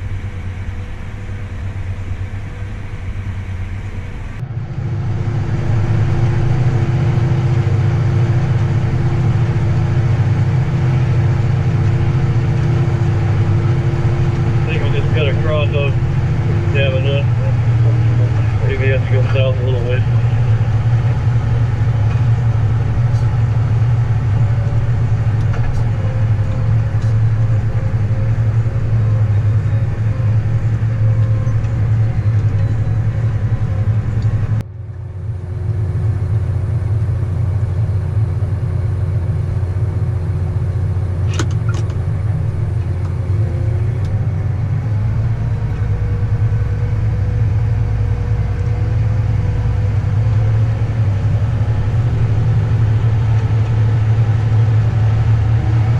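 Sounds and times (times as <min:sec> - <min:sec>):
vehicle engine running: 0:00.0 - 0:55.9.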